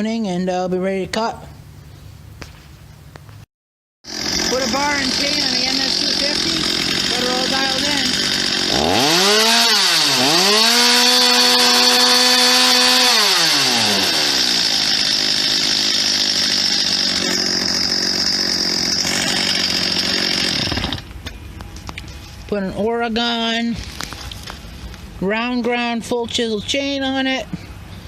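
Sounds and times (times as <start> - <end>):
chainsaw revving: 4.0 - 21.1
chainsaw cutting wood: 4.0 - 21.2.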